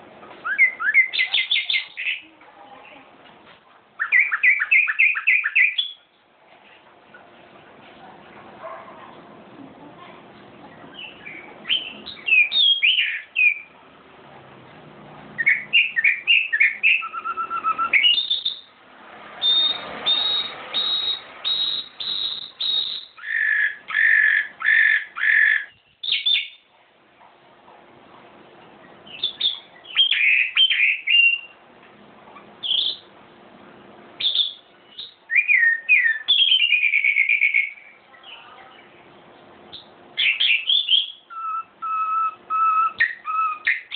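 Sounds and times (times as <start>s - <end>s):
songbird singing: 0.3s - 3.1s, 4.0s - 6.3s, 10.4s - 13.9s, 14.6s - 26.7s, 28.8s - 31.6s, 32.4s - 33.2s, 34.2s - 43.9s.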